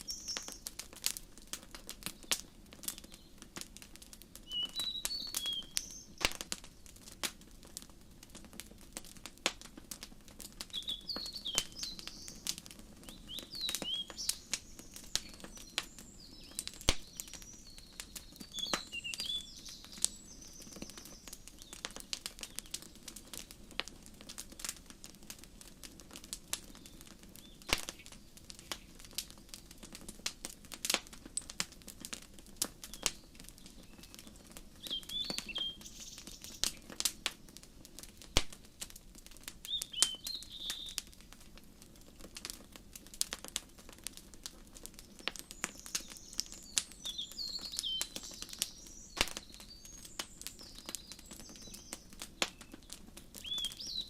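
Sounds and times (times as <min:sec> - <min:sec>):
birds chirping: 0:00.0 - 0:00.8, 0:04.4 - 0:06.9, 0:10.7 - 0:23.4, 0:26.7 - 0:29.6, 0:32.8 - 0:37.6, 0:39.6 - 0:41.0, 0:45.0 - 0:54.0
wood fire crackling and popping: 0:00.0 - 0:54.0.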